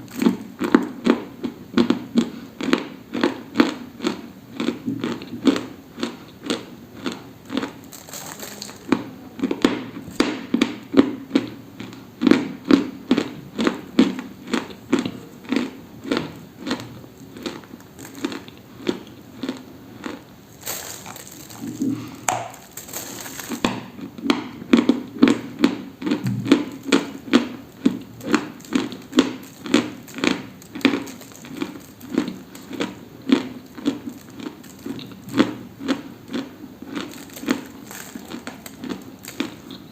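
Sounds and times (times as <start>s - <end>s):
dry crunching: 7.0s - 9.0s, 14.4s - 24.1s, 24.8s - 39.9s.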